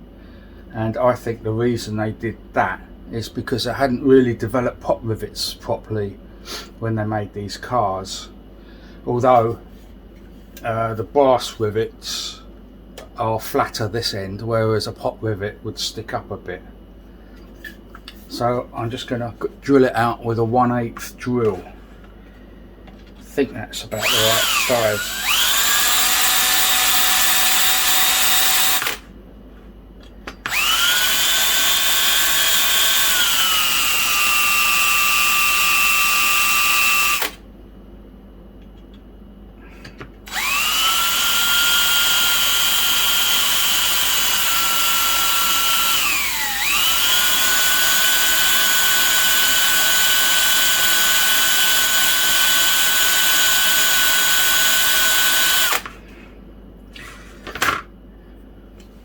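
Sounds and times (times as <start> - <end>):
electric drill drilling brass: 24.0 - 29.0, 30.5 - 37.4, 40.3 - 55.9.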